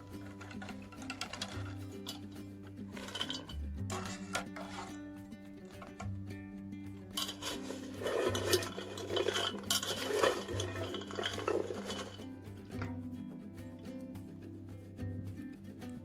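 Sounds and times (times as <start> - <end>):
dishes and cutlery clinking: 0.0 - 6.2, 7.0 - 13.1
quiet background music: 0.0 - 16.0.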